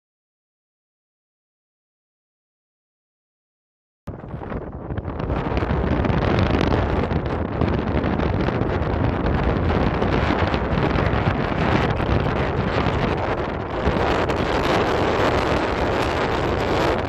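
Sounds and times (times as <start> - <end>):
wind buffeting microphone: 4.1 - 17.0
surf breaking on beach: 4.4 - 17.0.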